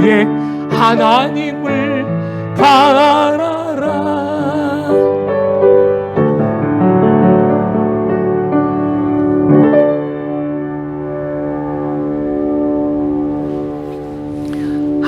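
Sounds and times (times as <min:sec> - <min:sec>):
piano playing slow chords: 0:00.0 - 0:15.0.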